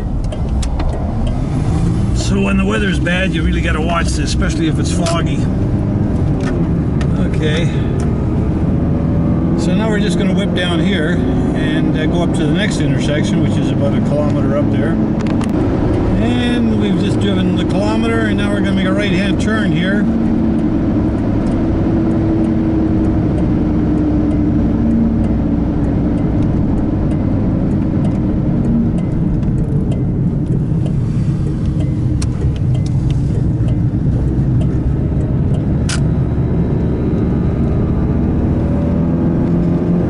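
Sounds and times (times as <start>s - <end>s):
car engine and tyre noise: 0.0s - 40.0s
sharp click: 35.5s - 36.2s.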